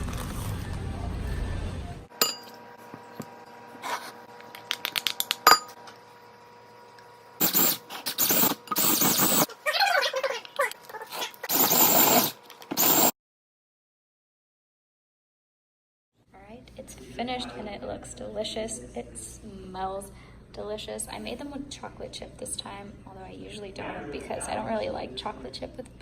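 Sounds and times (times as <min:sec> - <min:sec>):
utensils clinking against bowls: 0:02.2 - 0:02.6, 0:04.6 - 0:05.8.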